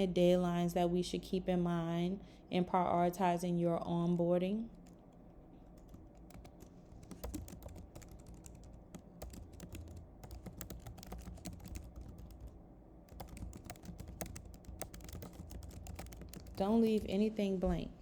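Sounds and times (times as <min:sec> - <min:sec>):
computer keyboard typing: 0:05.6 - 0:17.3.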